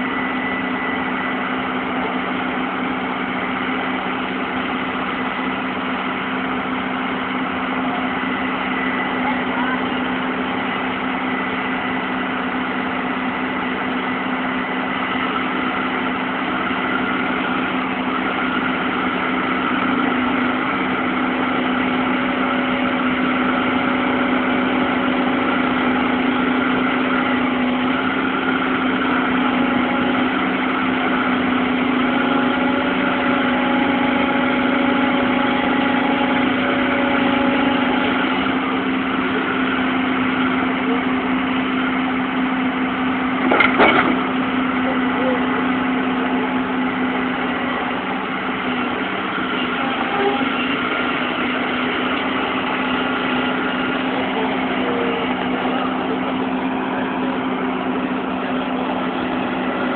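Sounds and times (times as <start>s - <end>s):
bulldozer diesel engine running: 0.0s - 59.9s.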